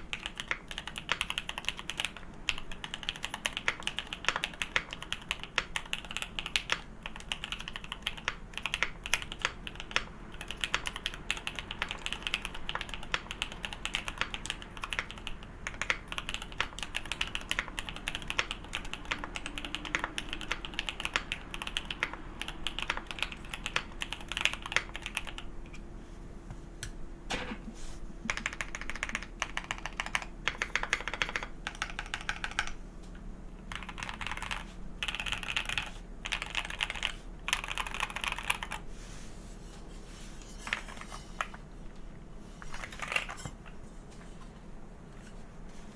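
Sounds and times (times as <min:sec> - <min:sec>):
fast typing on mechanical keyboard: 0:00.0 - 0:25.5, 0:28.2 - 0:32.8, 0:33.7 - 0:38.8, 0:40.7 - 0:41.6, 0:42.7 - 0:43.4.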